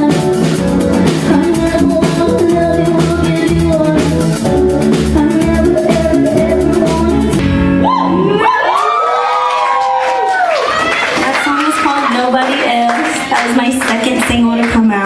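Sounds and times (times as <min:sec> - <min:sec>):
live band playing: 0:00.0 - 0:08.8
crowd screaming and cheering: 0:07.6 - 0:12.4.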